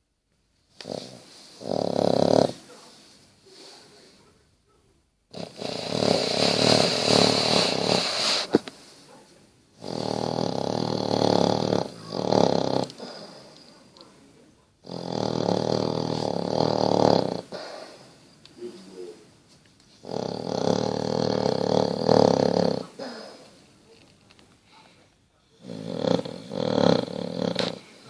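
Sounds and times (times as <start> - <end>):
dog snoring: 0.8 - 2.8, 5.3 - 8.7, 9.8 - 13.8, 14.8 - 19.1, 20.0 - 23.6, 25.4 - 28.0.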